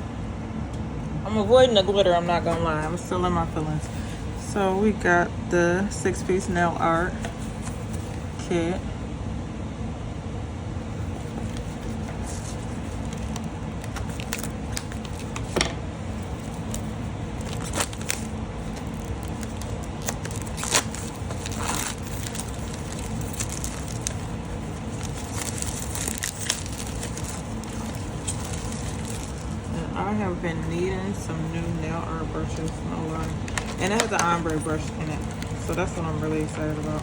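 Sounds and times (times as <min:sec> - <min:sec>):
low background rumble: 0:00.0 - 0:37.0
plastic packaging crinkling and tearing: 0:10.9 - 0:29.8, 0:32.5 - 0:37.0.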